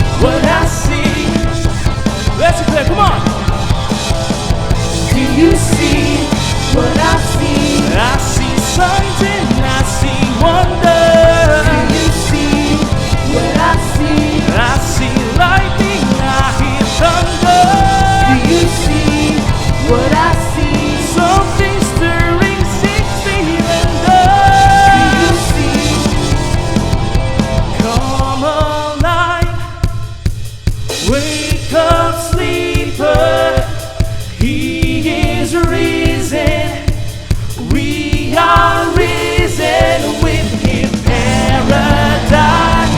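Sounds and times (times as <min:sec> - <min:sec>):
people singing: 0:00.0 - 0:03.5, 0:04.7 - 0:29.6, 0:30.9 - 0:42.9
band playing worship song: 0:00.0 - 0:42.9
drum kit: 0:00.0 - 0:42.9.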